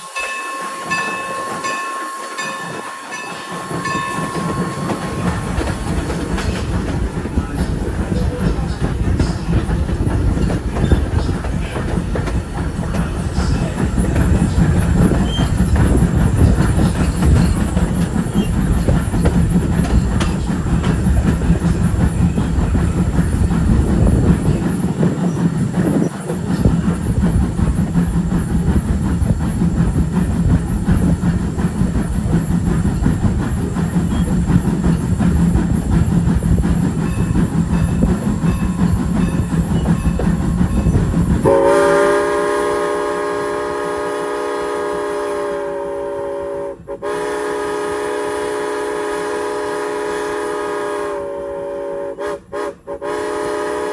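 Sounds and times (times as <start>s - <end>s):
wheels clacking over rail joints: 0.0s - 42.0s
train rumble: 0.0s - 53.9s.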